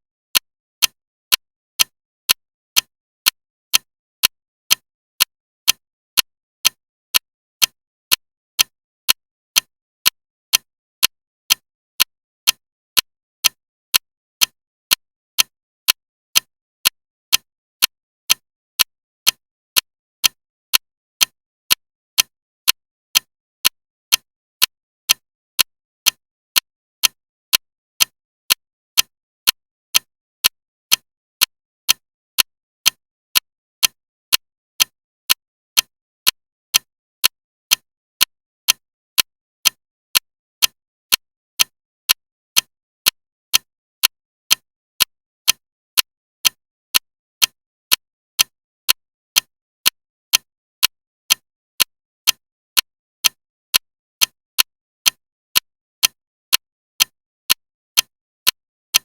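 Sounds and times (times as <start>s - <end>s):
clock ticking loudly: 35.8s - 59.0s.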